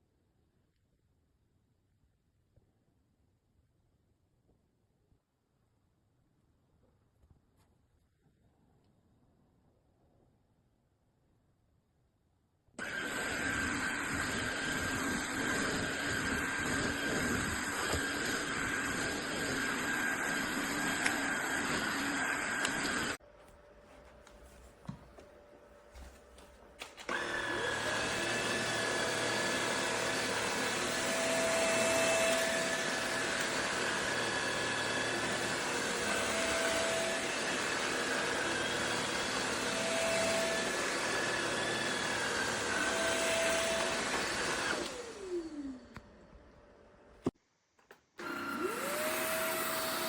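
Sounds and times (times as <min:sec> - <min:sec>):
stick vacuum cleaner whining: 0:12.8 - 0:50.0.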